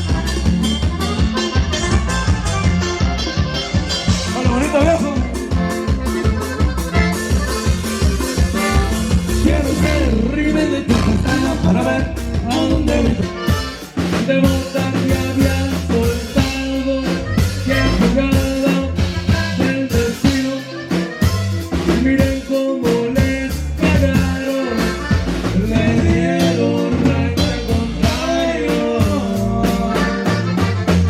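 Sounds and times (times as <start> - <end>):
bass: 0.0 - 31.0
drum kit beat: 0.0 - 31.0
guitar: 0.0 - 31.0
person singing: 8.8 - 13.4.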